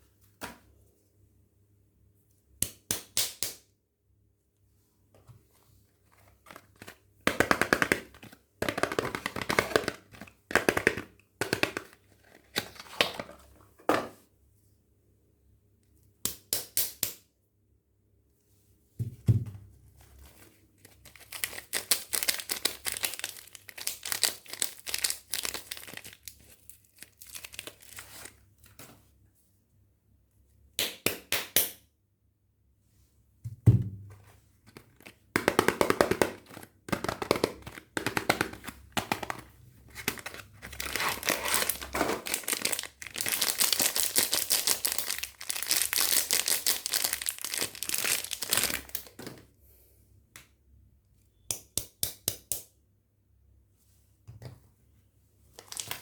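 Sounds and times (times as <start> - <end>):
soap wrapper crinkling and tearing: 20.8 - 28.3, 39.9 - 49.2, 55.6 - 56.0.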